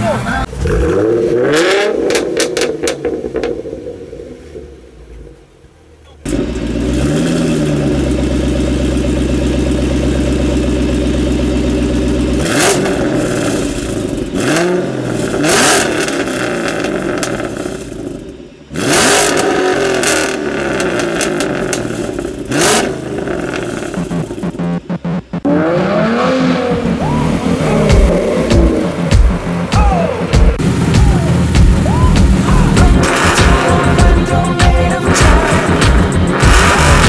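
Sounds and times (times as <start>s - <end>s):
car engines idling and revving: 0.0s - 37.0s.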